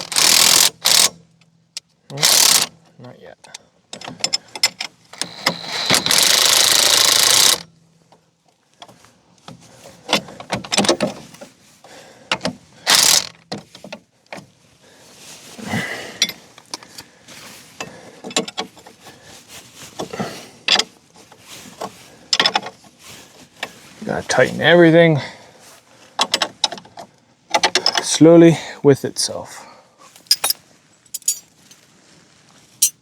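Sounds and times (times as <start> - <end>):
impact wrench bursts: 0.0 - 1.2, 2.1 - 2.7, 5.2 - 7.7, 12.9 - 13.4
hand tools clinking: 5.2 - 7.6, 30.2 - 31.5, 32.8 - 33.0.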